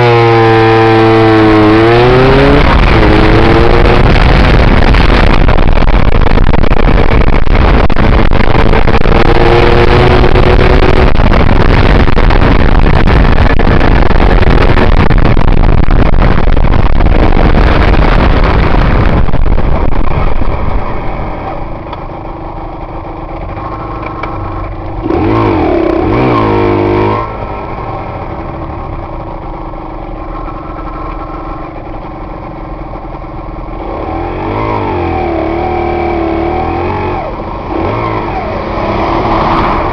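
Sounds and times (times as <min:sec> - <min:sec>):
two-stroke motorcycle engine: 0:00.0 - 0:39.9
wind rush: 0:00.3 - 0:28.6, 0:33.8 - 0:39.9.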